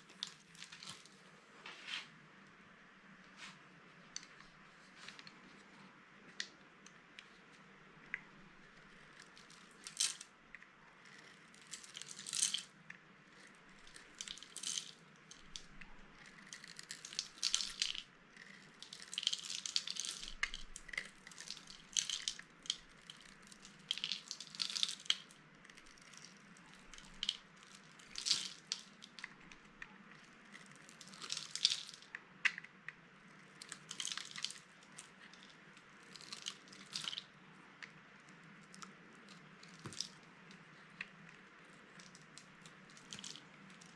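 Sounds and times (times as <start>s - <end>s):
dry soap crunching: 11.0s - 32.6s, 33.3s - 37.3s, 38.6s - 43.9s.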